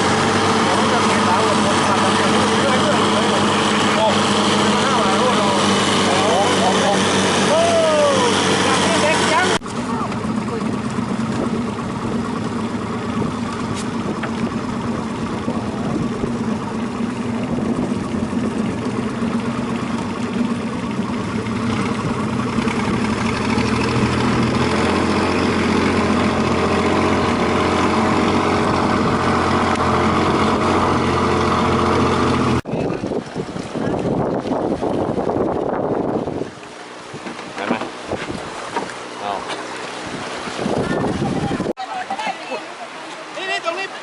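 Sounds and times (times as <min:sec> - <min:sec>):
boat engine droning: 0:00.0 - 0:44.0.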